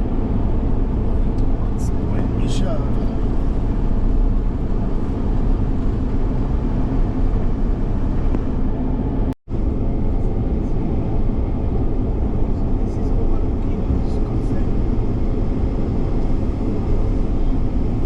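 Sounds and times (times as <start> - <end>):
car engine and road noise: 0.0 - 18.0.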